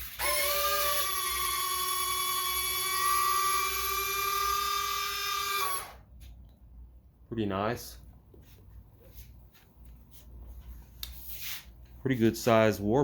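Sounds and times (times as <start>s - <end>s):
landing gear motors whining: 0.2s - 6.0s.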